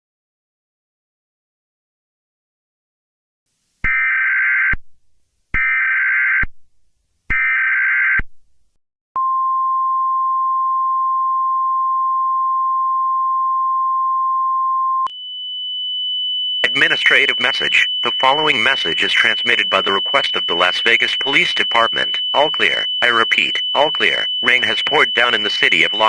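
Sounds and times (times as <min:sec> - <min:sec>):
steady alert tone: 0:16.6 - 0:26.0.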